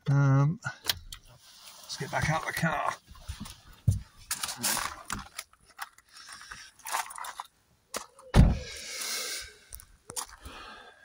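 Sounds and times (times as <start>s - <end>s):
clothing rustling: 1.3s - 7.5s
heavy thump: 8.4s - 8.8s.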